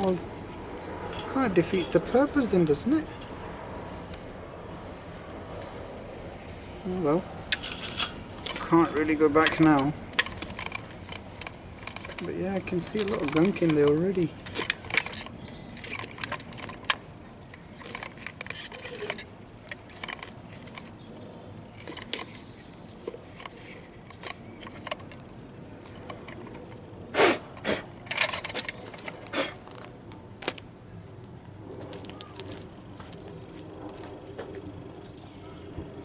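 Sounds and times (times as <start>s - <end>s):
plastic parts clicking and knocking: 7.5s - 21.0s, 21.8s - 26.8s, 28.1s - 30.6s.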